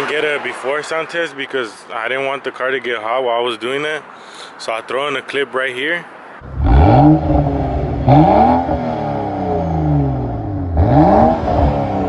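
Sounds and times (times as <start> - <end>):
car engine revving: 6.4 - 12.0.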